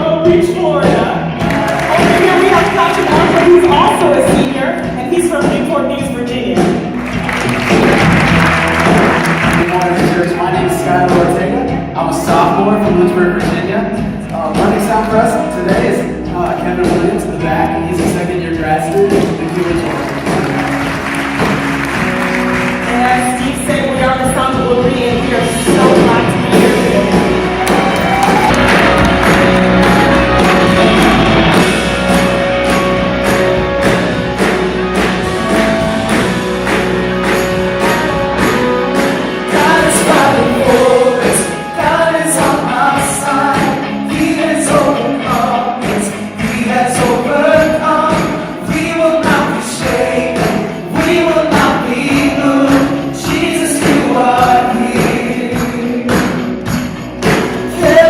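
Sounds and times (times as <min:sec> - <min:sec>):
live worship band playing: 0:00.0 - 0:58.0
people singing: 0:39.4 - 0:56.6, 0:57.4 - 0:58.0.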